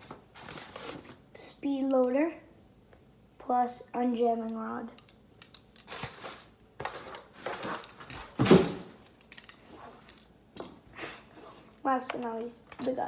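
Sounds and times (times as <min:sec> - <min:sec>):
packaging rustling and crinkling: 0:00.0 - 0:01.2, 0:05.7 - 0:10.3.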